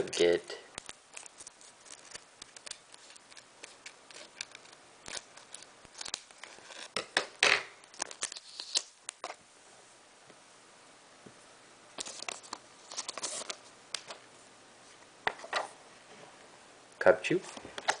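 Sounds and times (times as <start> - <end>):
foil wrapper crinkling: 0.0 - 7.0, 7.9 - 9.4, 12.0 - 14.2
trading cards being handled: 0.0 - 9.4, 12.0 - 14.2.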